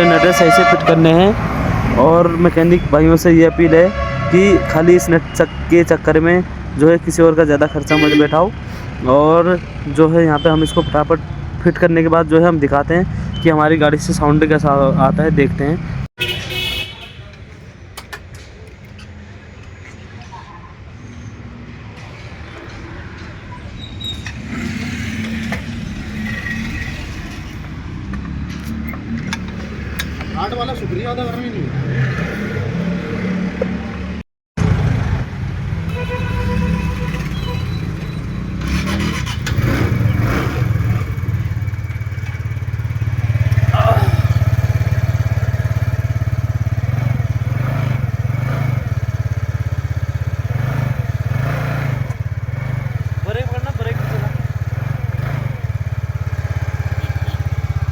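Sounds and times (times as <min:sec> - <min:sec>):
scooter engine running: 0:38.5 - 0:57.9.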